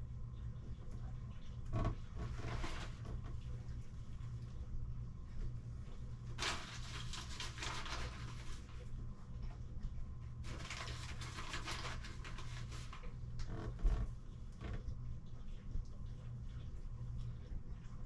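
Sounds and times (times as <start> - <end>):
steady low hum: 0.0 - 18.0
rustling and scraping tiles: 2.2 - 3.3, 6.4 - 8.8.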